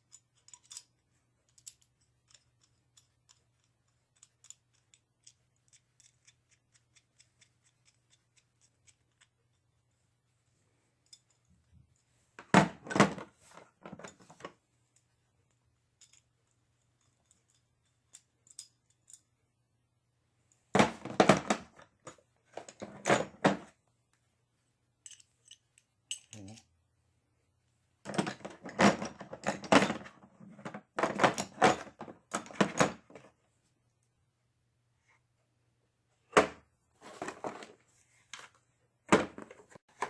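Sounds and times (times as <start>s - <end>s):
metal hand tools clinking: 0.0s - 3.4s, 25.0s - 26.7s.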